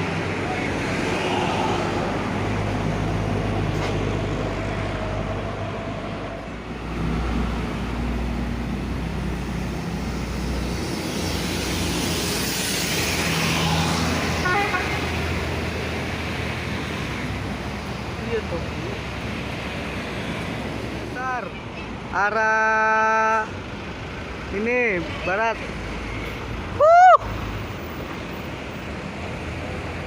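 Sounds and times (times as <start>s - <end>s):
vehicle passing close: 0.0s - 17.0s
heavy vehicle engines running: 0.0s - 30.0s.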